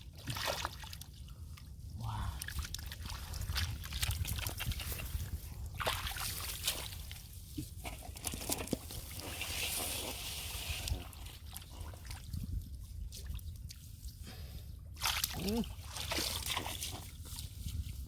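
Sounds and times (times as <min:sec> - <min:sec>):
shallow water sloshing and splashing: 0:00.0 - 0:14.0, 0:14.9 - 0:18.0
steady water hiss: 0:09.2 - 0:11.2.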